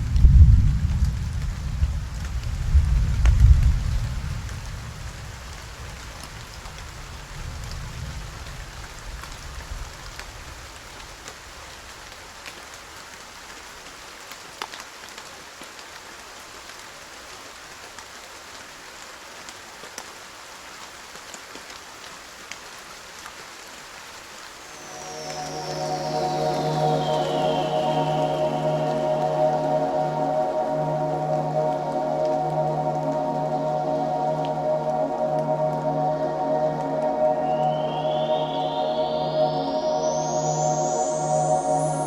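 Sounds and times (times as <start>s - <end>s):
steady rain: 0.0s - 42.0s
raindrops ticking sharply: 24.6s - 42.0s.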